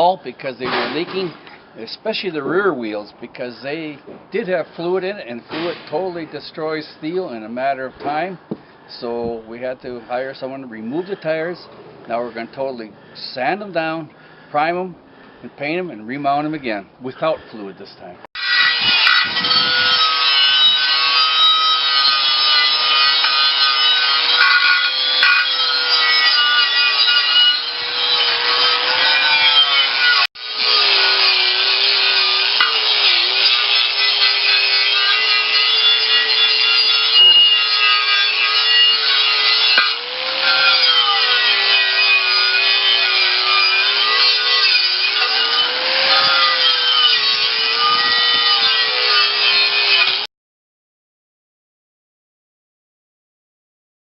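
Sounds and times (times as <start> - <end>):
power sander motor whine: 18.4 - 50.2
abrasive scraping on metal: 21.8 - 50.1.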